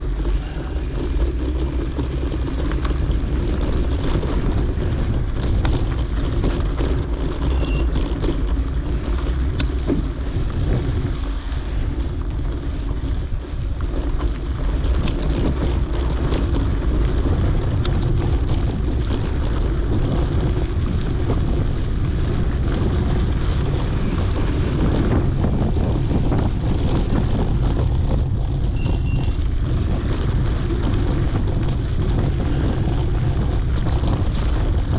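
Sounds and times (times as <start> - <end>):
bike clicks and rattles: 0.0 - 34.9
wind noise on microphone: 0.0 - 34.9
high buzzing: 7.5 - 7.9, 28.8 - 29.4.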